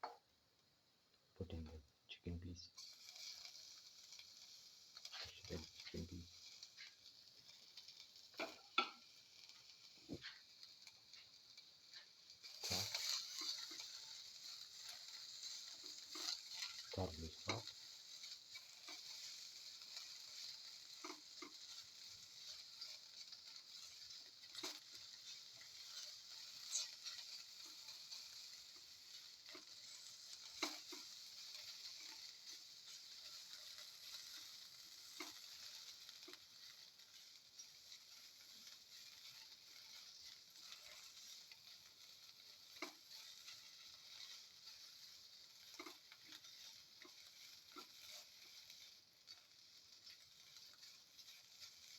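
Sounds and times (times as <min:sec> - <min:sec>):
chicken sizzling in a pan: 0:00.0 - 0:51.9
spoon clicking against pan: 0:08.3 - 0:09.1.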